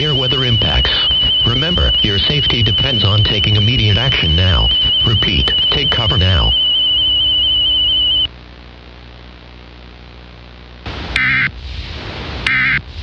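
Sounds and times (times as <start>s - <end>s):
warbling digital data tones: 0.0s - 8.3s
wavering high tone: 0.0s - 8.3s
tape hiss: 0.0s - 13.0s.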